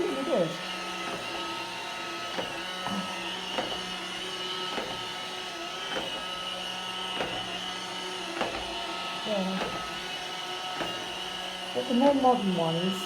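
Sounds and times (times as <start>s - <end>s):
robot vacuum motor hum: 0.0s - 13.0s.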